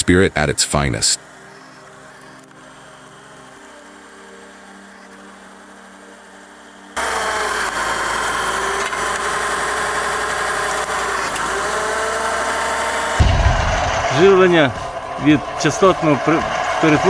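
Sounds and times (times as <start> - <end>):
machine running: 7.0 - 17.0.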